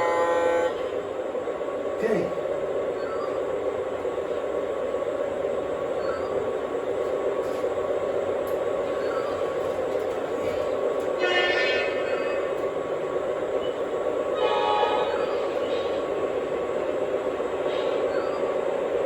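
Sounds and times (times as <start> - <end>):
electronic train horn blasts: 0.0 - 1.0, 10.4 - 12.6, 14.3 - 16.0
model train motor and wheel drone: 0.0 - 1.1.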